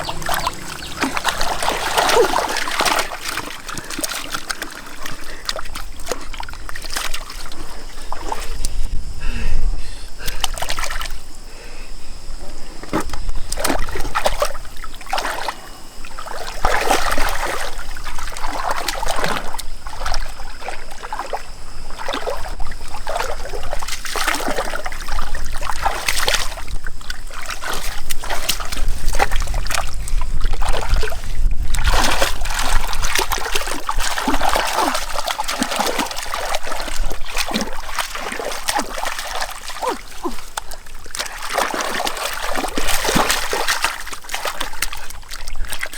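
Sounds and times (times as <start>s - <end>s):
water trickling and dripping: 0.0s - 8.8s
water splashing and sloshing: 0.0s - 45.9s.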